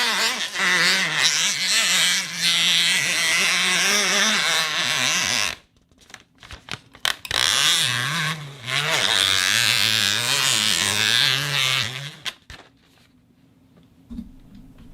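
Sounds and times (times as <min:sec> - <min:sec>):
buzzy squeak of packaging: 0:00.0 - 0:05.7, 0:07.4 - 0:12.6.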